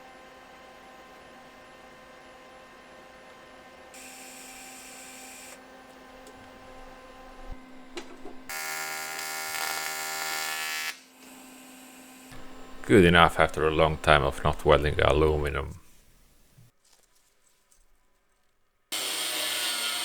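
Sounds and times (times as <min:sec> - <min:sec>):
welding arc buzzing: 0:06.2 - 0:15.3.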